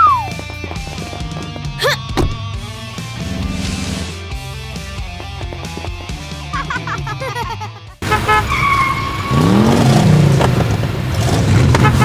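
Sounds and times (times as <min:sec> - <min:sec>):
rock music: 0:00.0 - 0:09.0
cartoon horn toot: 0:08.0 - 0:09.5, 0:11.8 - 0:12.0
cartoon vehicle running: 0:08.0 - 0:12.0.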